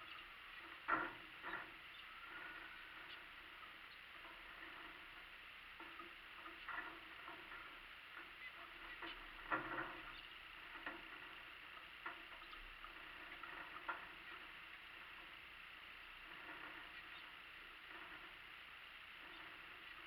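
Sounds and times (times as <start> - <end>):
small birds calling: 0.0 - 5.0, 5.8 - 11.4, 12.1 - 15.0, 16.0 - 18.4
faint steady hiss: 0.0 - 20.0.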